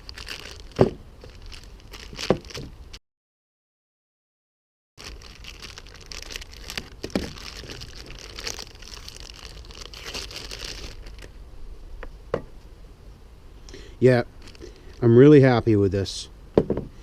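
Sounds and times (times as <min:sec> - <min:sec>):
crinkling handling rustle: 0:00.0 - 0:02.8, 0:05.0 - 0:11.4, 0:14.1 - 0:15.6
knock: 0:16.6 - 0:16.9.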